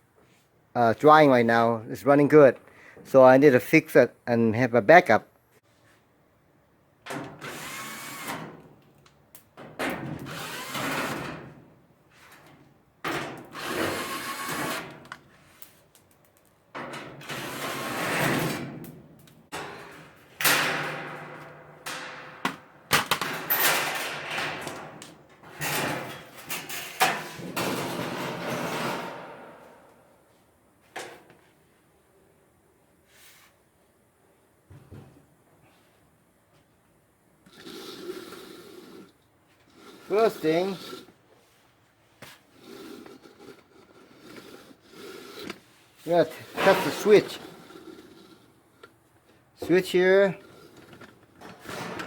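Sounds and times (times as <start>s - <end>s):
power drill running: 7.4s - 8.3s, 10.3s - 11.2s, 13.6s - 14.7s.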